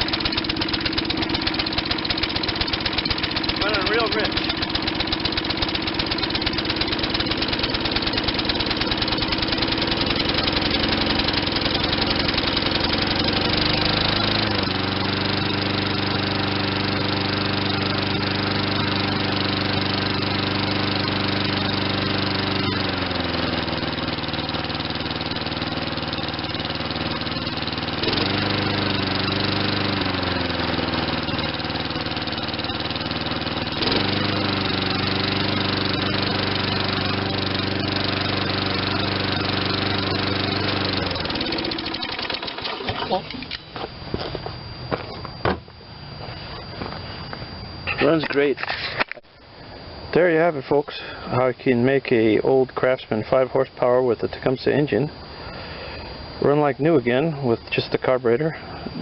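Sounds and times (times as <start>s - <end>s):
lawn mower engine running: 0.0s - 49.3s, 52.4s - 59.0s.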